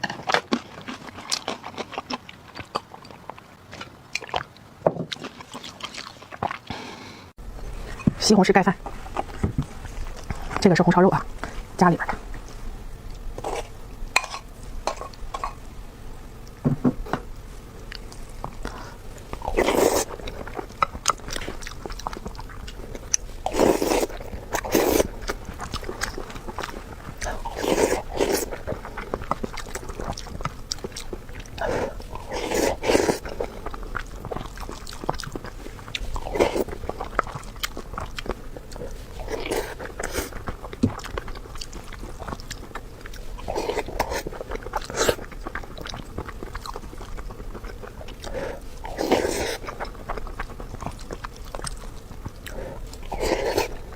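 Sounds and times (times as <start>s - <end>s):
person chewing and biting food: 0.0s - 7.0s, 17.8s - 53.9s.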